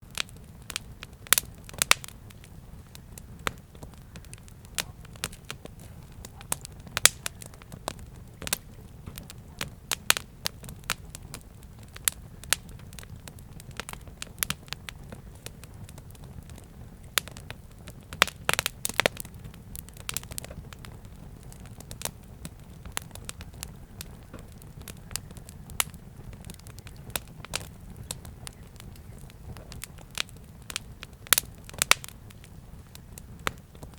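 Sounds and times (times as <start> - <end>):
low rumble of flames: 0.0 - 33.9
wood crackling and popping: 0.0 - 33.9.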